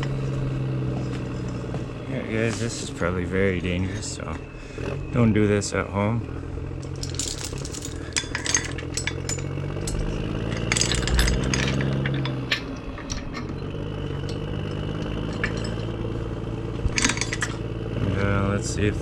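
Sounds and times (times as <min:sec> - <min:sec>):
motor running steadily: 0:00.0 - 0:19.0
metallic clinks of tools: 0:06.8 - 0:17.7.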